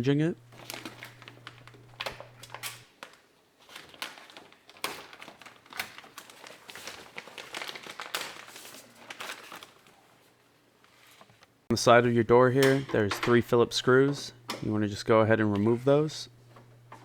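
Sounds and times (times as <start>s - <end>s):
plastic sheet crinkling: 0.5s - 10.4s.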